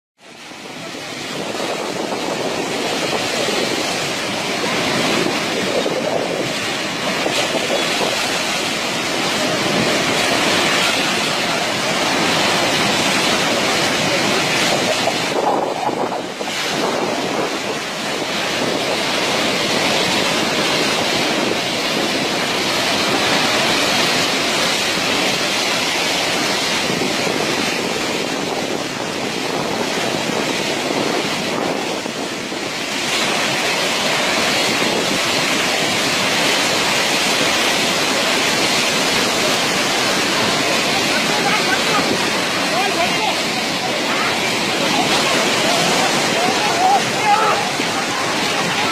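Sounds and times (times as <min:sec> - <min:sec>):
river rushing: 0:00.2 - 0:48.9
wind buffeting microphone: 0:00.2 - 0:48.9.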